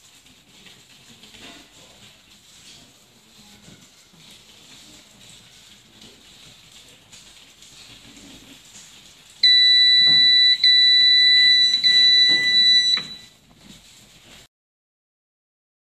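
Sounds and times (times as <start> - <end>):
electronic buzzer alarm beeping: 9.4 - 13.3.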